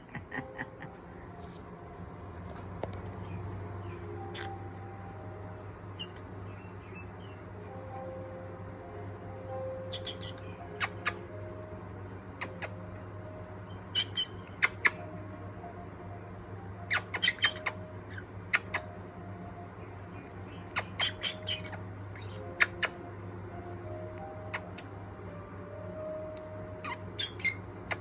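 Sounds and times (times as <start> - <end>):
steady low hum: 0.0 - 28.0
parrot squawking: 4.3 - 4.6, 9.9 - 11.2, 13.9 - 15.1, 16.9 - 19.0, 20.6 - 23.0, 26.8 - 28.0.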